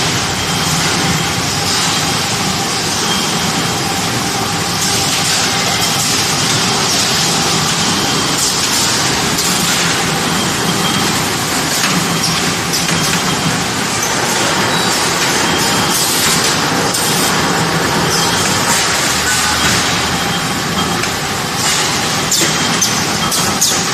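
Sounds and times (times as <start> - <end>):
packing machine running: 0.0 - 23.9
short sharp machine sounds: 14.7 - 21.0.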